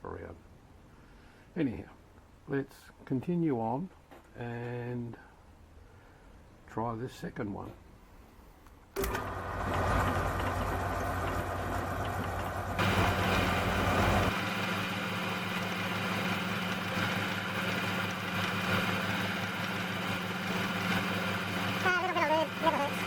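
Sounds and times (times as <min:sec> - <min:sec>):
lathe motor running: 0:09.0 - 0:23.0.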